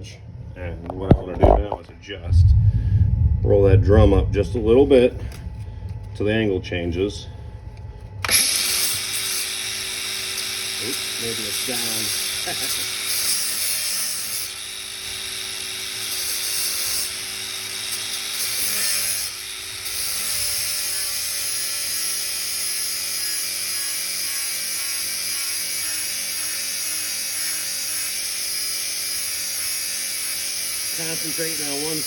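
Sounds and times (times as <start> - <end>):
angle grinder grinding steel: 8.2 - 32.0.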